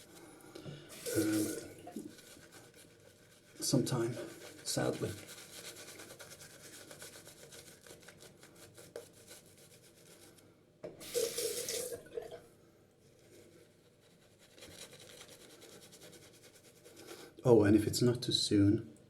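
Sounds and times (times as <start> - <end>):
tap water running into sink: 0.6 - 2.1, 10.8 - 12.4
scratchy rasping strokes: 0.9 - 10.4, 13.2 - 17.2.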